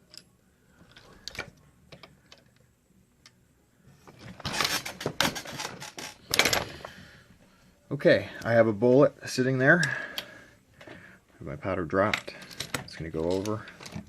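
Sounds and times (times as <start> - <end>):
metal parts rattling: 4.2 - 6.9, 12.1 - 14.0.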